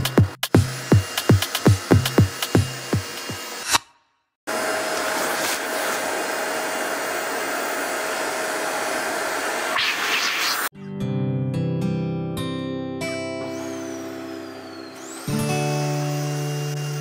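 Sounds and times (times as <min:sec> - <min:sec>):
appliance motor and fan whooshing: 0:04.5 - 0:09.7.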